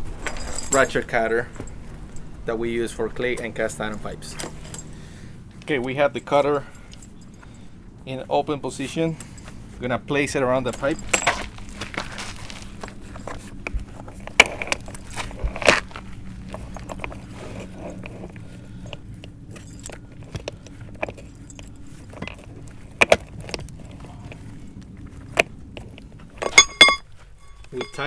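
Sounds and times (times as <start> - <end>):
metal chain clinking and rattling: 0.0 - 5.0, 5.7 - 7.7, 10.4 - 24.4, 26.4 - 28.0
low hum: 20.8 - 28.0.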